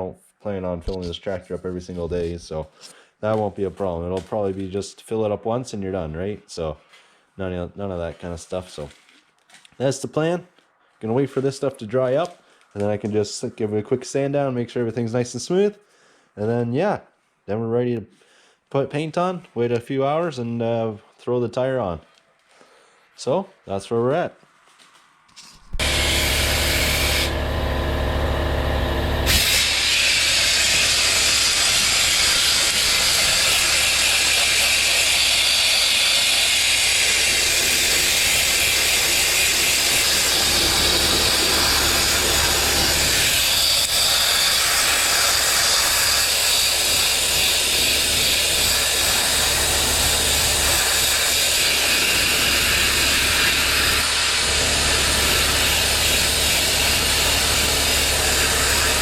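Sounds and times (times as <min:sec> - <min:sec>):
low hum: 0:25.7 - 0:31.9
sandblaster hissing on metal: 0:25.8 - 0:27.4, 0:29.2 - 0:59.0.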